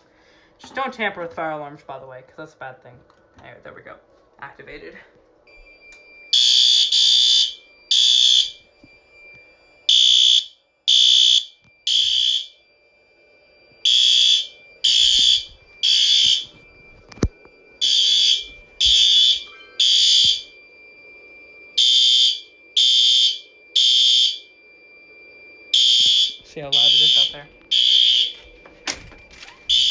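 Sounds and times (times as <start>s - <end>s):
faint steady high tone: 4.9s - 6.4s, 8.5s - 9.9s, 12.5s - 29.9s
fire alarm horn blasts: 5.5s - 29.9s.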